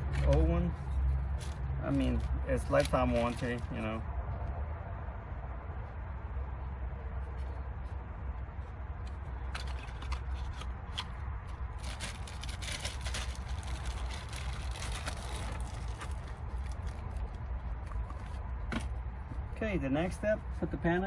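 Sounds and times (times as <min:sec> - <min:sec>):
clicks and scraping of plastic parts: 0:09.4 - 0:11.2.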